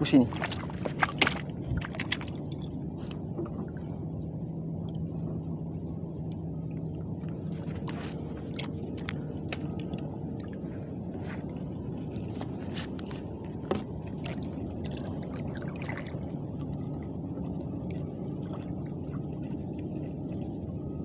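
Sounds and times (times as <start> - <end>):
low steady hum: 0.0 - 21.0
water lapping against boat hull: 0.0 - 21.0.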